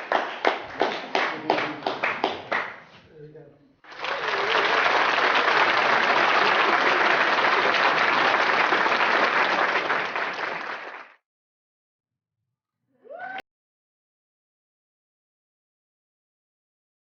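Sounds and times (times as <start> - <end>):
crowd applauding: 0.0 - 2.8, 3.8 - 11.2.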